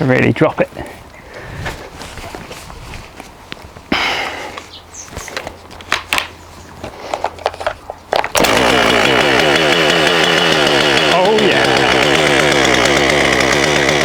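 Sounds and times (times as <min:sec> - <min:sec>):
chainsaw engine starting and running: 0:08.3 - 0:14.0.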